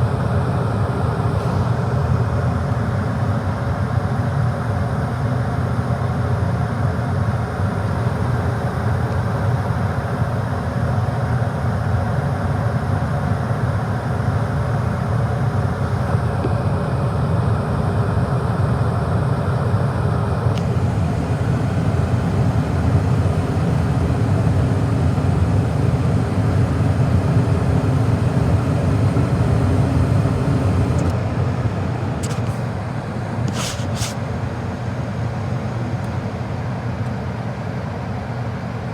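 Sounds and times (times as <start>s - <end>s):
gas furnace rumbling: 19.9s - 34.2s.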